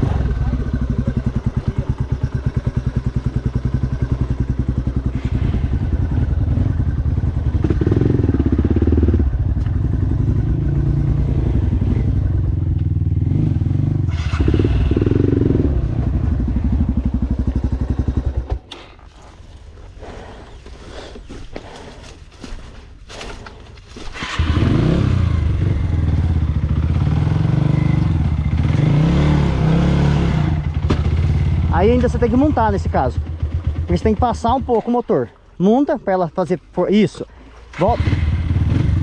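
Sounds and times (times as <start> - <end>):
dirt bike engine revving: 0.0 - 18.7, 24.2 - 34.9, 37.7 - 39.0.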